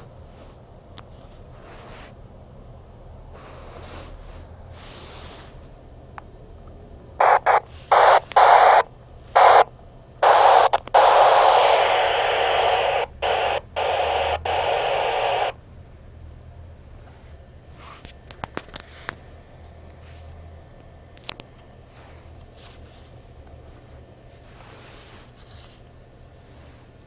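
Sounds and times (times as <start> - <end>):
radio receiver hiss: 7.2 - 15.6.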